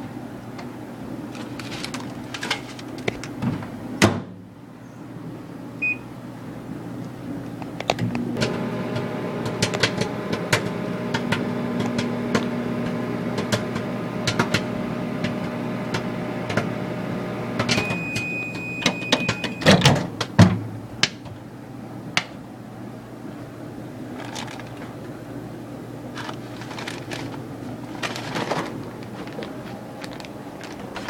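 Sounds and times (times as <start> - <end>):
microwave oven humming: 0.0 - 31.0
long microwave beep: 5.8 - 6.1, 17.6 - 19.8
popcorn popping: 8.4 - 16.7, 26.1 - 31.0.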